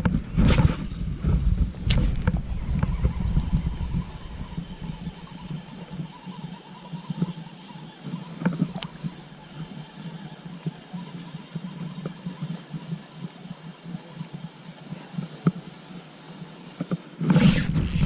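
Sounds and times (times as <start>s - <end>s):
wind rumbling on microphone: 0.0s - 6.3s
river water moving: 0.3s - 12.0s.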